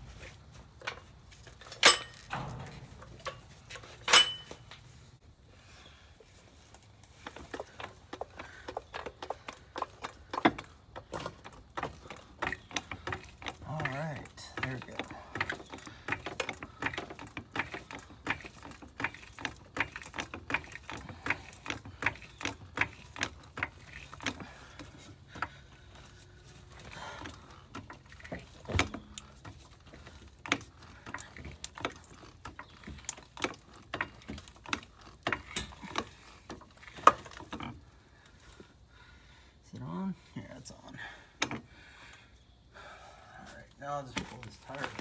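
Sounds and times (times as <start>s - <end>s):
dull thump: 1.9s - 4.7s.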